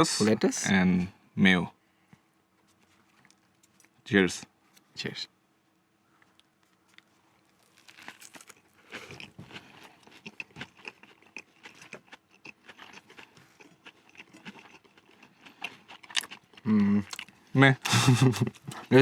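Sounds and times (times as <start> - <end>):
person chewing crunchy food: 6.3 - 19.0.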